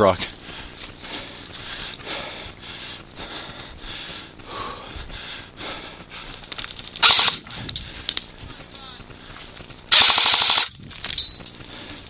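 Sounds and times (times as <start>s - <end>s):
person breathing hard: 0.3s - 6.6s, 7.5s - 8.4s, 11.5s - 12.0s.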